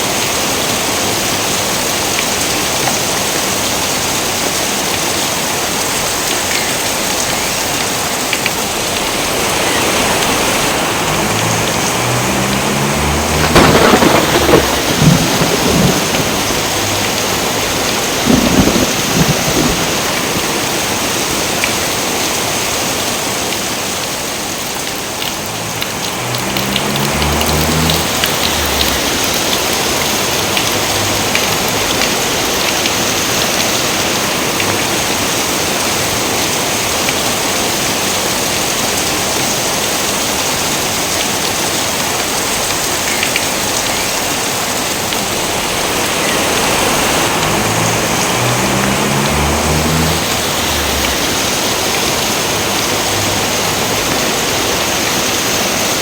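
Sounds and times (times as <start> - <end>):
steady rain: 0.0 - 56.0
rolling thunder: 10.7 - 21.0, 25.4 - 32.0, 45.2 - 54.1.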